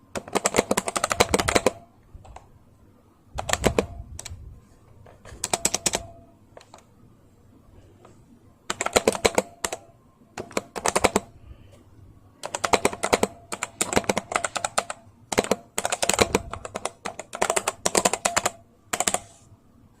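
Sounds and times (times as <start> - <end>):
mechanical keyboard typing: 0.1 - 2.5, 3.4 - 4.4, 5.2 - 6.8, 8.7 - 11.3, 12.4 - 19.4.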